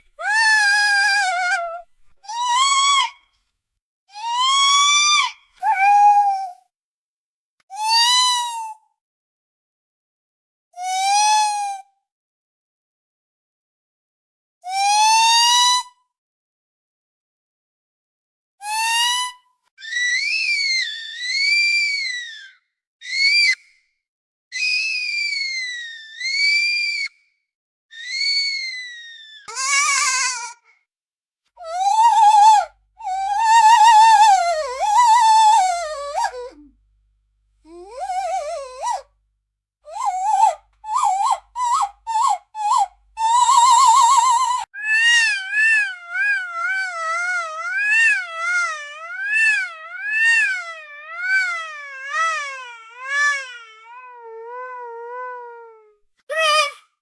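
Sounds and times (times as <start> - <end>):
toddler whining: 0.1 - 3.0, 5.6 - 6.6, 29.5 - 30.6, 31.6 - 36.7, 37.7 - 39.0, 39.9 - 56.8.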